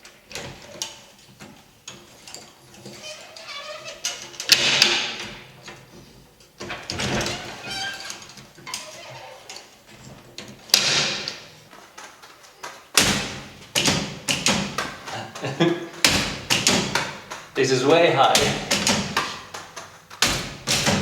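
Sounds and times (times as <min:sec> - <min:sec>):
machine frame knocking and clattering: 0:16.0 - 0:17.6, 0:18.2 - 0:21.0.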